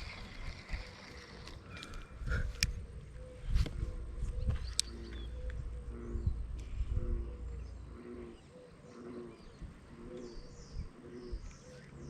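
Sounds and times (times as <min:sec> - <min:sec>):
low cooing bird call: 0:00.0 - 0:12.0.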